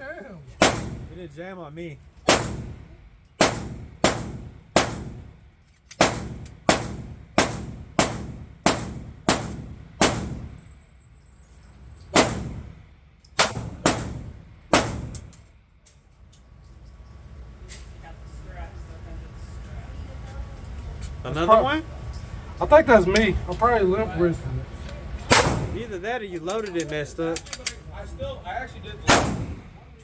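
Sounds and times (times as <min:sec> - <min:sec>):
pistol shots: 0:00.6 - 0:01.1, 0:02.3 - 0:02.8, 0:03.4 - 0:05.3, 0:06.0 - 0:10.5, 0:12.2 - 0:12.7, 0:13.4 - 0:15.3, 0:25.3 - 0:25.8, 0:29.1 - 0:29.8.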